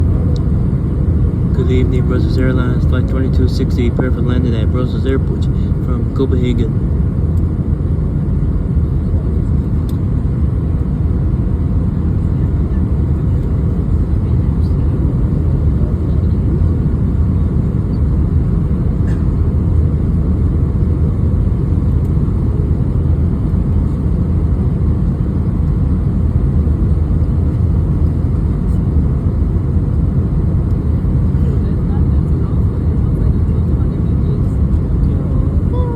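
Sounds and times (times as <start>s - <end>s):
aircraft cabin engine rumble: 0.0s - 35.9s.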